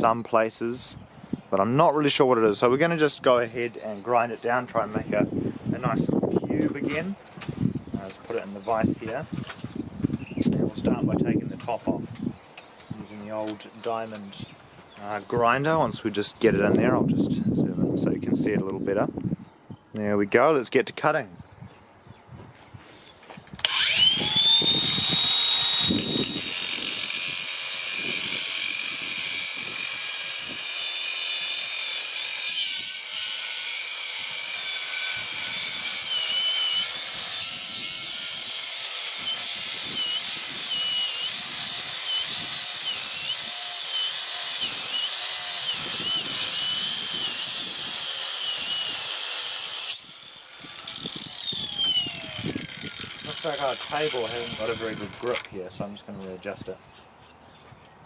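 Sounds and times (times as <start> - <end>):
electric grinder whining: 23.6 - 55.6.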